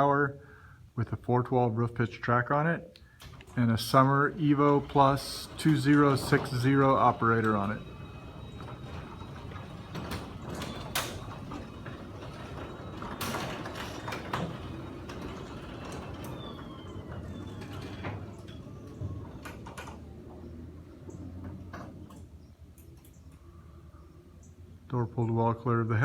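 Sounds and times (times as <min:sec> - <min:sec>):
clicks and knocks from door track: 0:03.2 - 0:20.2
garage door motor hum: 0:03.2 - 0:24.8.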